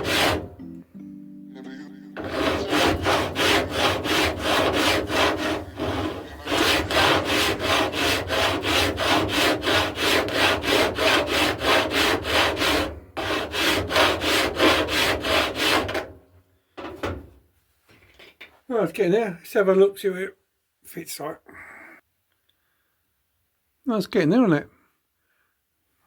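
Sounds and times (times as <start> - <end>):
hand file rasping on steel: 0.0 - 0.5, 2.2 - 16.1.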